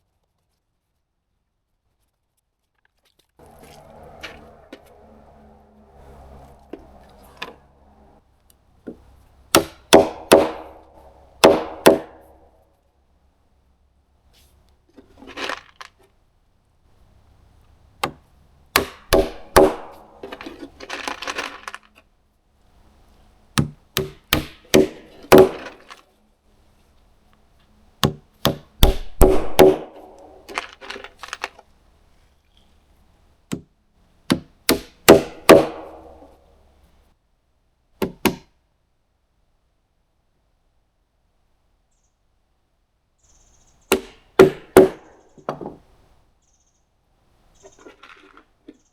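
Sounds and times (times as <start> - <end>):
hammer striking wood: 8.9 - 12.5, 18.0 - 20.6, 23.6 - 26.0, 28.0 - 30.7, 34.3 - 36.4, 38.0 - 38.5, 43.9 - 45.8.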